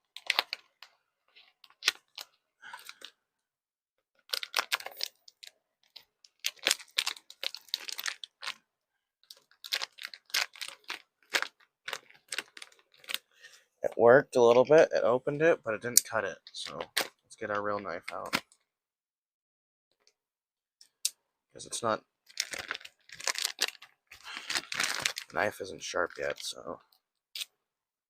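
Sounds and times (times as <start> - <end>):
plastic wrapping crinkling and tearing: 0.0 - 3.1, 4.2 - 8.6, 9.2 - 13.3, 22.3 - 26.5.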